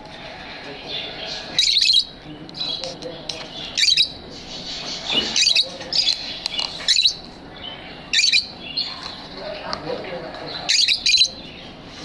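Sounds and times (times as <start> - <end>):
soft bird twittering: 0.2 - 9.4, 10.5 - 12.0
shrill rapid bird chirps: 1.0 - 2.9, 3.6 - 9.3, 10.6 - 11.8.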